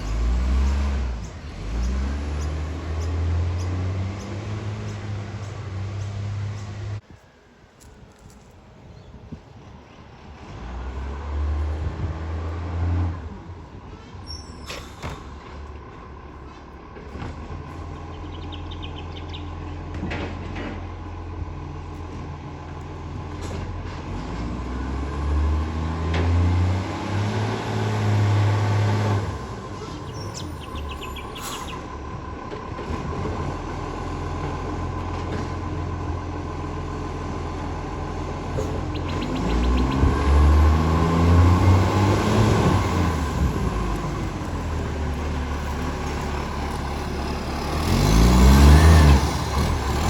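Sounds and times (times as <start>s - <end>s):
garbage truck diesel engine running: 9.7s - 25.3s, 27.2s - 50.0s.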